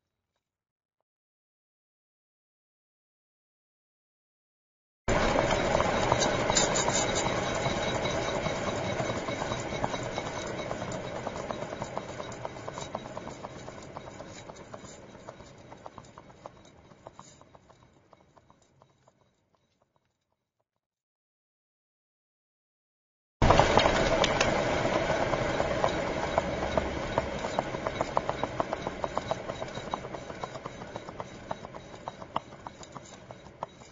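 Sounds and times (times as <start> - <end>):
car wheel whirring with ticks: 5.1 - 19.9, 23.4 - 33.9.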